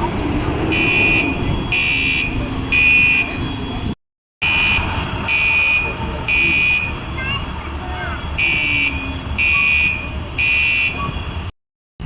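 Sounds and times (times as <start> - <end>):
fire alarm beeping: 4.4 - 10.9.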